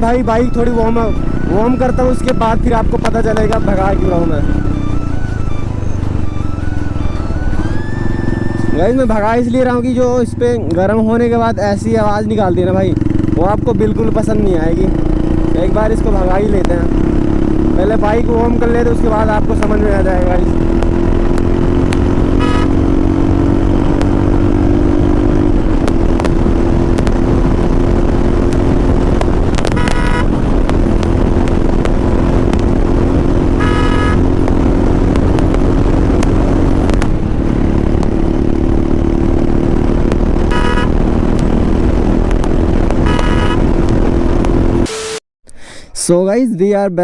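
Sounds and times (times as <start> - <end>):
motorcycle engine running: 0.0 - 44.9
vehicle horns tooting: 22.1 - 23.3, 29.6 - 30.6, 33.4 - 34.8, 40.4 - 41.1, 43.0 - 43.9.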